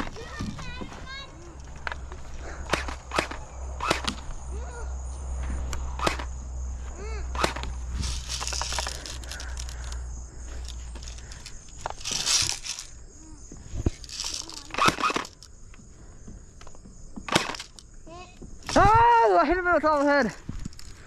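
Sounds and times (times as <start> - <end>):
steady low rumble: 1.2 - 14.1
sharp clicks: 1.6 - 4.4, 5.7 - 6.4, 7.3 - 13.0, 13.8 - 15.8
rustling: 6.0 - 15.6.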